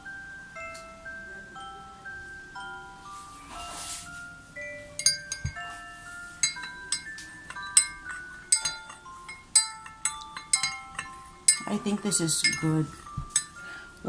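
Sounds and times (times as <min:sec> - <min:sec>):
glockenspiel-like mallet melody: 0:00.0 - 0:14.0
sharp bright clinks: 0:05.0 - 0:14.0.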